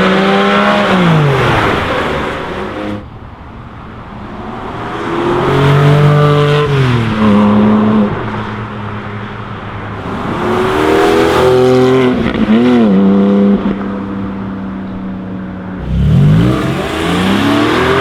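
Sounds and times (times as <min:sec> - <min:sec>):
sports car accelerating past: 0:09.9 - 0:14.5, 0:15.8 - 0:18.0.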